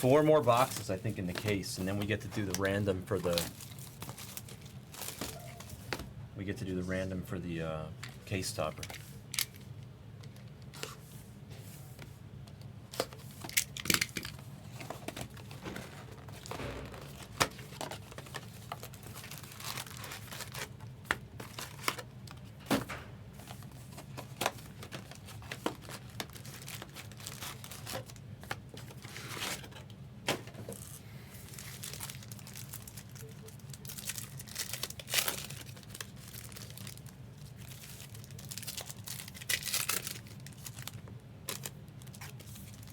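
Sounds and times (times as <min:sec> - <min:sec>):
foil wrappers crinkling: 0:00.0 - 0:06.0, 0:12.9 - 0:22.6, 0:23.4 - 0:29.8, 0:30.7 - 0:42.9.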